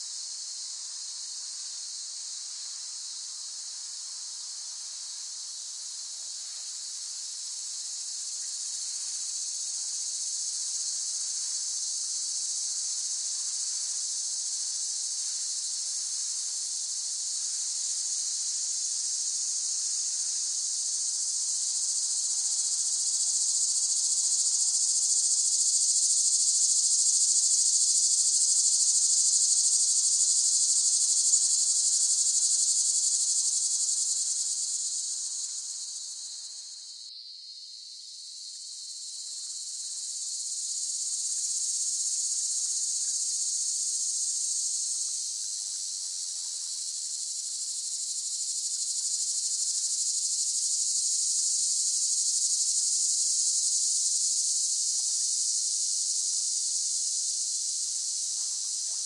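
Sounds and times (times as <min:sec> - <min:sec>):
cicadas buzzing: 0:17.3 - 0:59.0.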